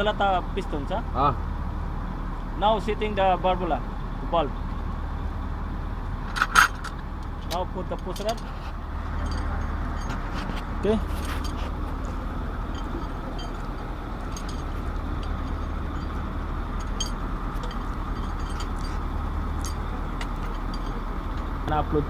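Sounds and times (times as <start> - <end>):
vehicle engine drone: 0.0 - 22.0
metallic clinks of tools: 6.4 - 8.6, 9.2 - 21.5.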